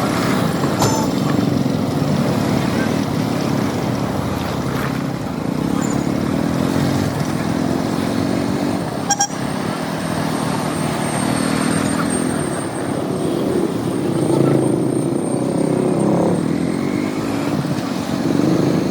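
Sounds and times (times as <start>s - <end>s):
motorcycle engine running: 0.0s - 18.9s
vehicle horn beeps: 9.0s - 9.5s.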